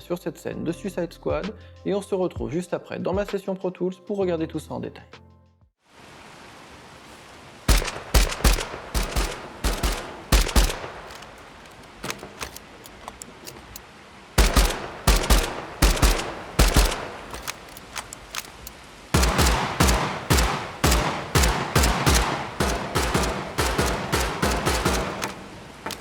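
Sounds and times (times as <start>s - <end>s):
rain hiss: 5.8s - 26.0s
automatic gunfire bursts: 7.7s - 13.8s, 14.4s - 26.0s.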